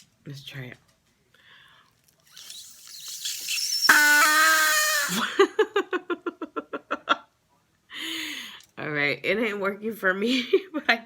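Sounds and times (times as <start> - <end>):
person blowing squealing tone: 2.3 - 5.4.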